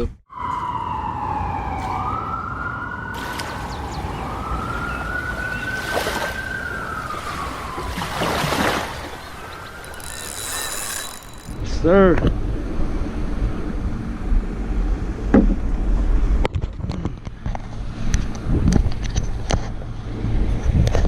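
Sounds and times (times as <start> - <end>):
siren wailing: 0.3 - 11.6.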